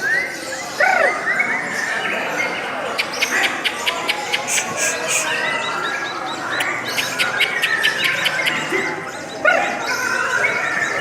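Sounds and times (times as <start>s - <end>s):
lovebirds chattering: 2.1s - 10.2s
harsh bird call: 2.6s - 9.1s.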